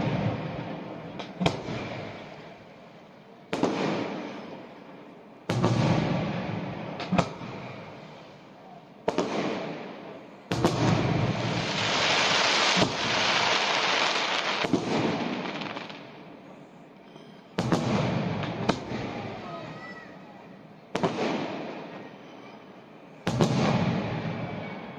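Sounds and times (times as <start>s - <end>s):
fireworks booming: 0.0s - 2.9s, 3.5s - 8.3s, 9.0s - 16.2s, 17.6s - 19.5s, 20.9s - 21.9s, 23.2s - 24.9s
loud fireworks hiss: 0.0s - 4.9s, 5.5s - 16.2s, 23.2s - 24.7s.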